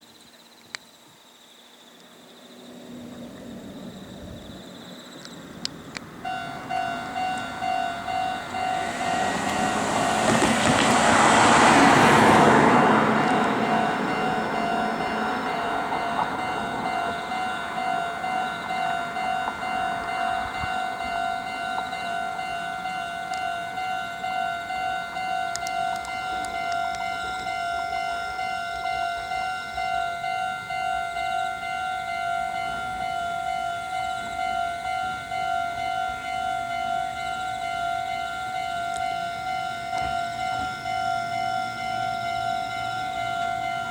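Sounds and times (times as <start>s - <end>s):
swell of noise passing: 2.6s - 22.0s
level-crossing warning bell ringing: 2.6s - 43.9s.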